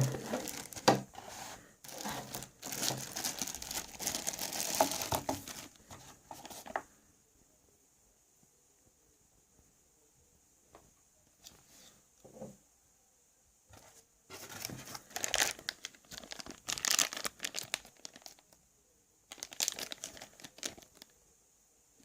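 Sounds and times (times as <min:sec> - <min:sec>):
packaging crinkling and tearing: 0:00.0 - 0:01.1, 0:01.8 - 0:05.8, 0:14.4 - 0:18.6, 0:19.3 - 0:21.1.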